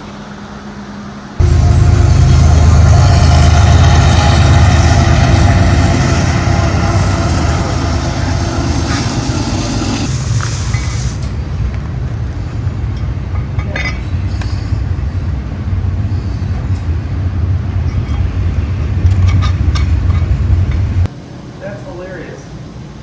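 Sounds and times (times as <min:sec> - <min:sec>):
loud low machine hum: 0:00.0 - 0:21.6.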